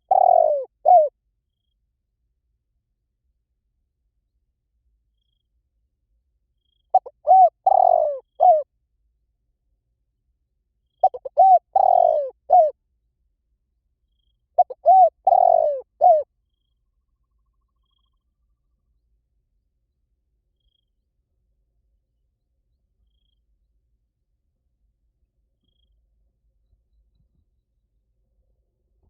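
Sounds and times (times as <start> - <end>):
dove cooing: 0.0 - 1.1, 6.9 - 8.7, 11.0 - 12.7, 14.6 - 16.3.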